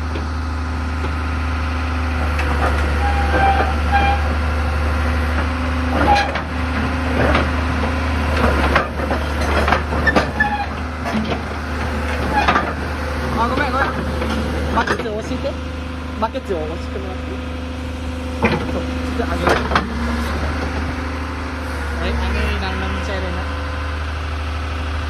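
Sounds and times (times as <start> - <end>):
diesel engine running: 0.0 - 25.0
metallic knocks and clanks: 5.4 - 15.3, 18.4 - 21.0.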